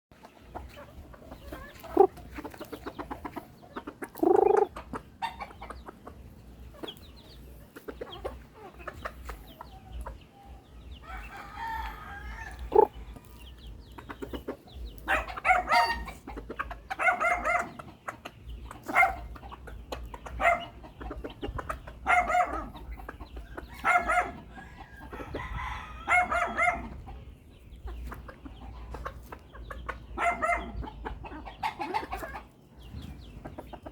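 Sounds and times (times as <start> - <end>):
chickens clucking: 0.1 - 33.9
rooster crowing: 11.0 - 12.9.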